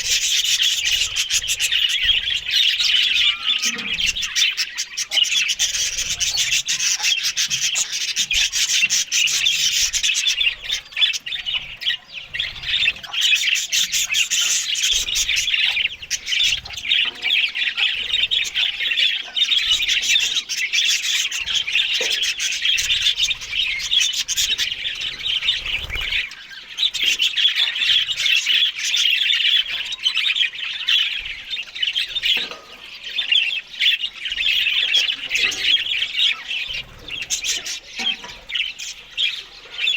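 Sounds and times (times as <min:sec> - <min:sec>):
budgerigars chattering: 0:00.0 - 0:39.9.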